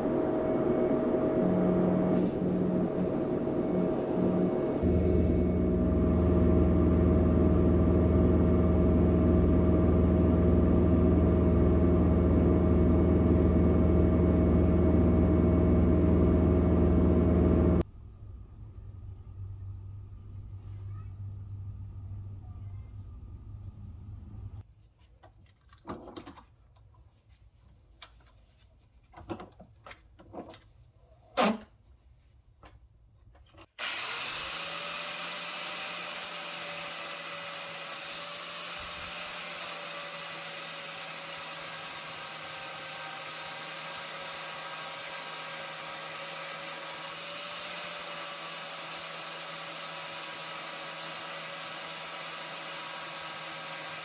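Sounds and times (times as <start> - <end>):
angle grinder grinding steel: 33.8 - 54.0.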